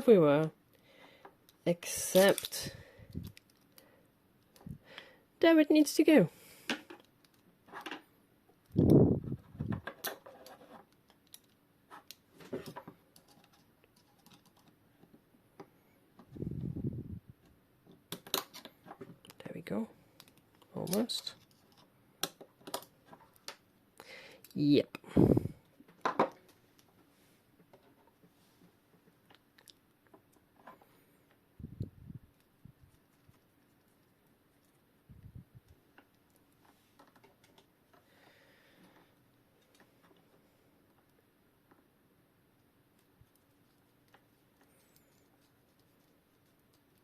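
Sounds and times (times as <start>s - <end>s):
faint metal clicks and taps: 20.2s - 23.6s.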